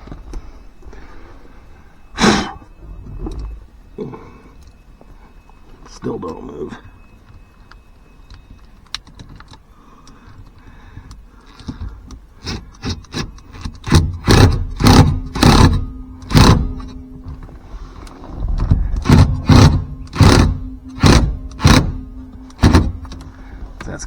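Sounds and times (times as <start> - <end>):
sharp knocks and clunks: 11.0 - 24.0.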